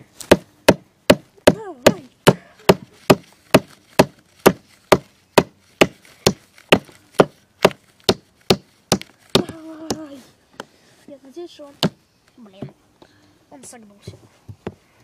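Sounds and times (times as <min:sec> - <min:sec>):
hammer striking nail into wood: 0:00.3 - 0:09.6.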